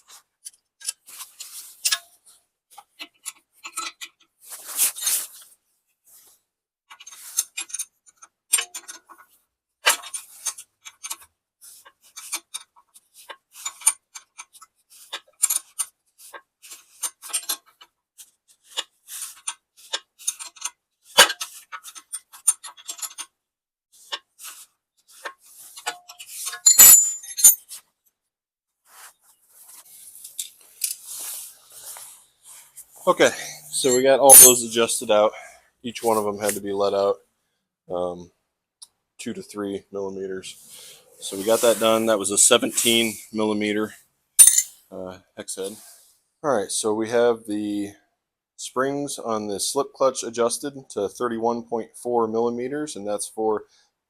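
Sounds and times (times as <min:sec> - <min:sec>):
wrench clinking on bolts: 0:25.8 - 0:27.6, 0:33.8 - 0:34.6, 0:44.4 - 0:44.7.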